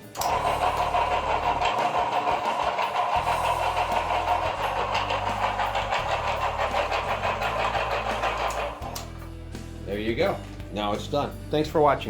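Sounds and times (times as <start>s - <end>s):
bandsaw running: 0.0s - 9.4s.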